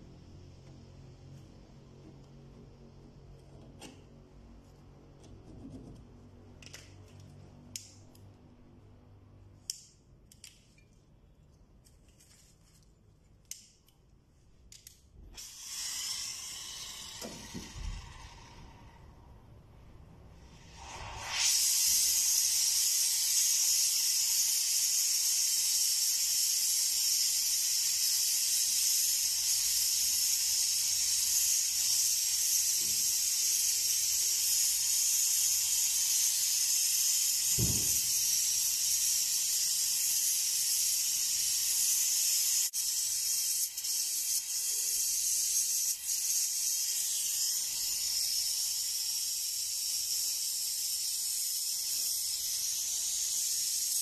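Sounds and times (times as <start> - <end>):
torch flame hissing: 15.4 - 19.3, 20.4 - 54.0.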